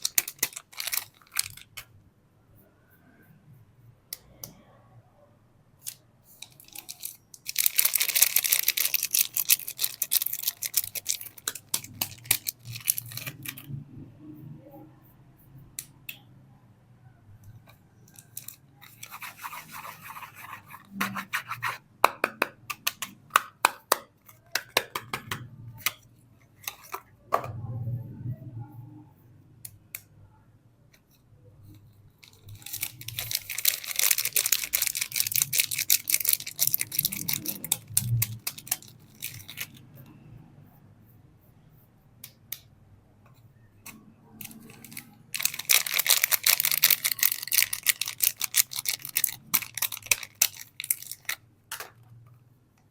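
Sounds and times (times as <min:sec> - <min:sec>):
packaging rustling and crinkling: 0:00.0 - 0:01.9, 0:06.3 - 0:13.7, 0:32.2 - 0:39.8, 0:44.4 - 0:52.0.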